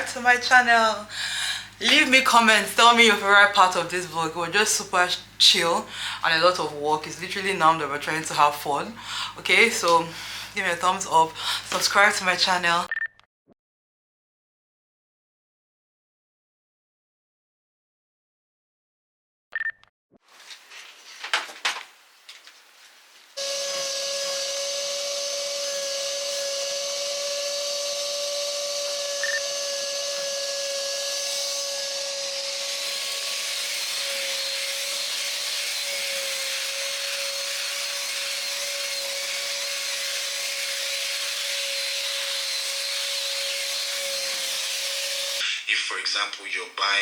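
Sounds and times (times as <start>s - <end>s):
machine whirring and humming: 23.4s - 45.4s.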